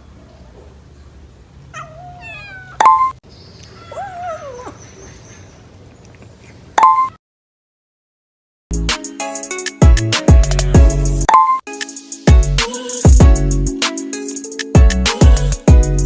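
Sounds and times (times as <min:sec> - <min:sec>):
cat meowing: 0:01.7 - 0:05.6.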